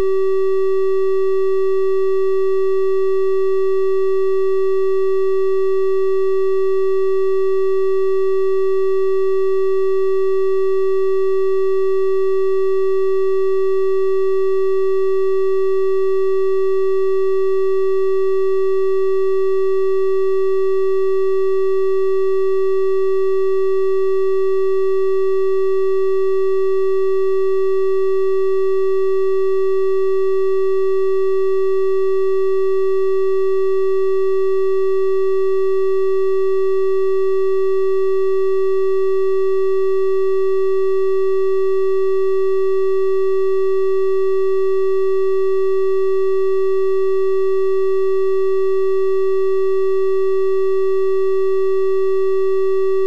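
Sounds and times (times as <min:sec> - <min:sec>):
electronic test tone: 0:11.6 - 0:53.0.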